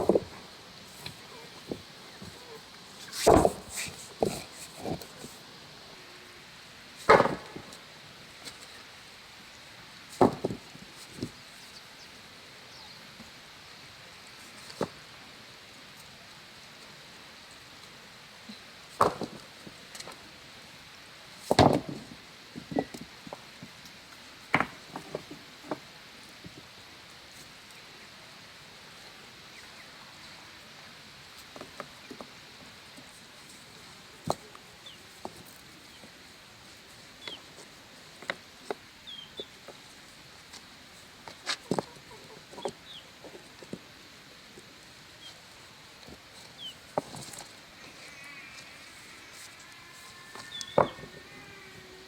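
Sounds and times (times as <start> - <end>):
farmyard birds calling: 39.0 - 39.6, 46.4 - 52.0.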